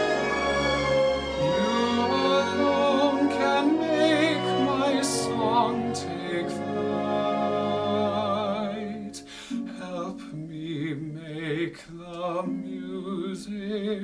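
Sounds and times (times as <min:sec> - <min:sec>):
orchestral ballad music: 0:00.0 - 0:10.4.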